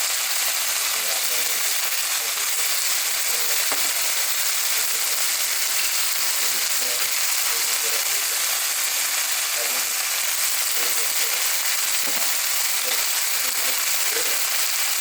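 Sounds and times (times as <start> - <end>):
food sizzling in a hot pan: 0.0 - 15.0.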